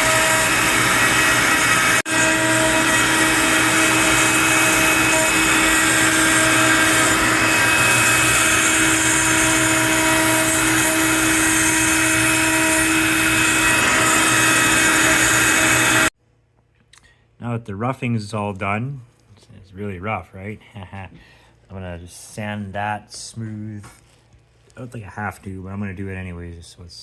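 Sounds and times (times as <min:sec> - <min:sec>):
cnc router cutting wood: 0:00.0 - 0:16.1.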